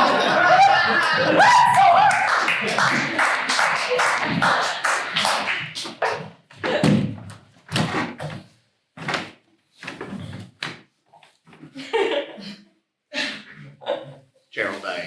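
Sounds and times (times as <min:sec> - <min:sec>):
audience applause: 0:00.0 - 0:06.1.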